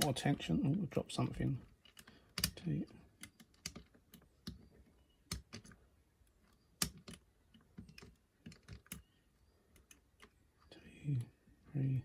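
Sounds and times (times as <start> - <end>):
lock pick clicks and taps: 1.8 - 2.6, 3.2 - 4.7, 5.3 - 5.8, 6.4 - 9.1.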